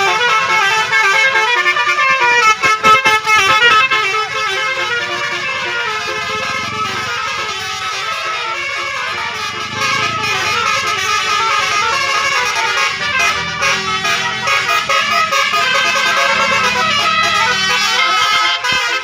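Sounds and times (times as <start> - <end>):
musical bus air horn: 0.0 - 19.0.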